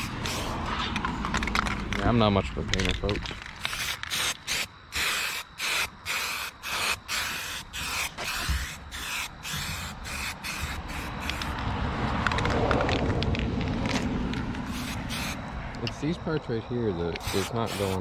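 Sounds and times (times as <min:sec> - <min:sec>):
aerosol spray can hissing: 0:00.0 - 0:00.6, 0:03.6 - 0:11.6, 0:14.6 - 0:15.4, 0:17.2 - 0:18.0.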